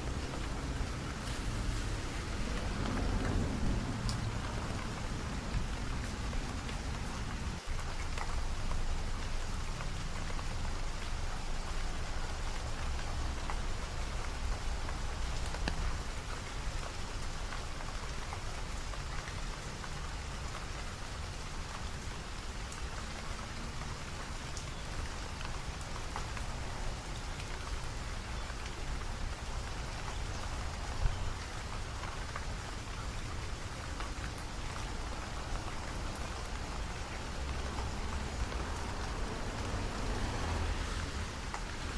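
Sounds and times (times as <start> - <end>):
low rumble: 0.0 - 7.6
raindrops ticking: 0.0 - 41.9
steady rain falling: 0.0 - 41.9.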